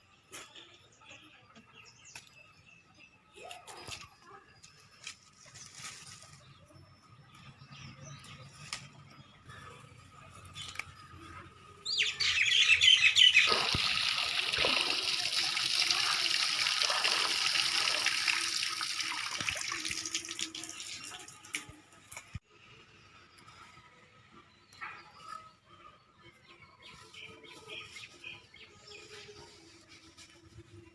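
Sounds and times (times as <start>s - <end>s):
water pouring in a stream: 13.1s - 21.7s.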